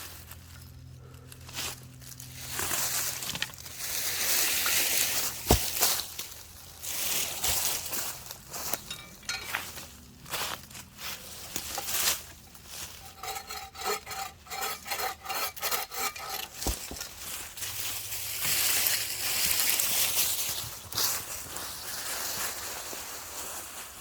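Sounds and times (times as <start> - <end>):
hand saw cutting wood: 11.7 - 17.2.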